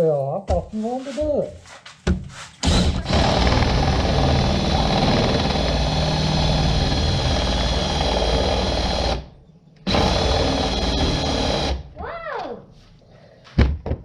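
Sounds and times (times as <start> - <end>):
electric drill whine: 2.6 - 11.8.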